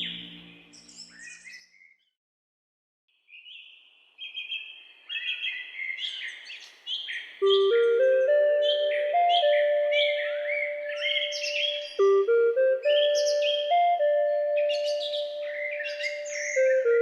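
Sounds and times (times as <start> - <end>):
birds chirping and trilling: 0.0 - 2.1, 3.3 - 17.0.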